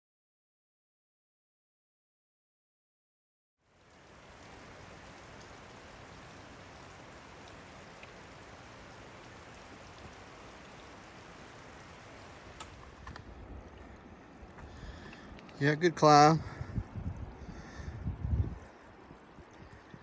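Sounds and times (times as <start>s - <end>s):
running water rushing: 3.7s - 20.0s
faint ticks: 12.5s - 15.6s.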